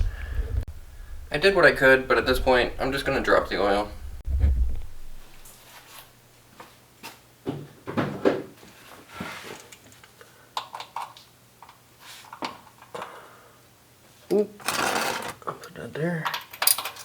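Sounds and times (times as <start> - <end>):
hand tools clicking and knocking: 14.6 - 17.0.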